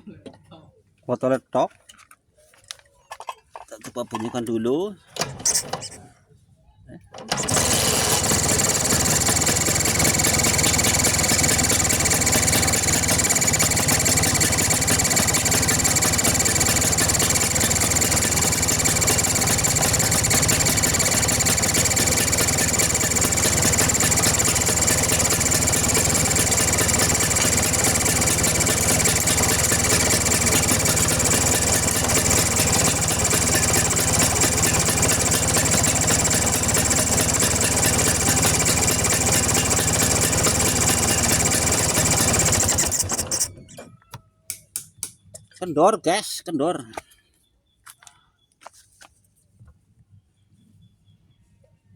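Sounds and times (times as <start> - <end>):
scooter engine idling: 7.2 - 43.8.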